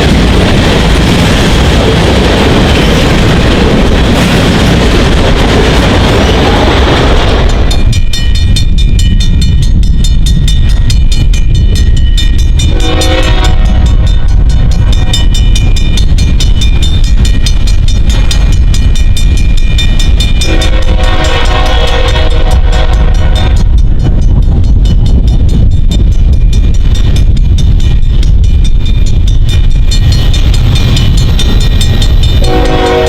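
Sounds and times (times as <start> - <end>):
train rumbling: 0.0 - 33.0
locomotive horn chord: 12.7 - 14.0, 20.4 - 23.6, 32.4 - 33.0.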